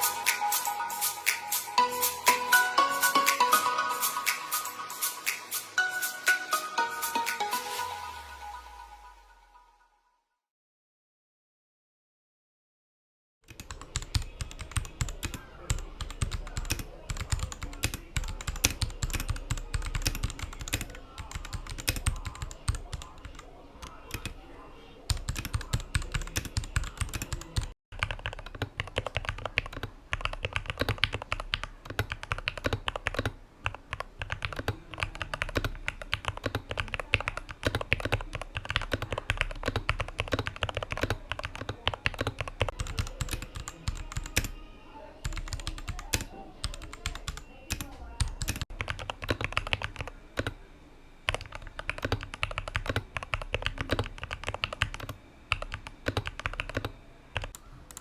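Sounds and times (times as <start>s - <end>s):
mechanical keyboard typing: 13.5s - 24.4s, 25.1s - 44.6s, 45.2s - 50.6s, 51.3s - 58.0s.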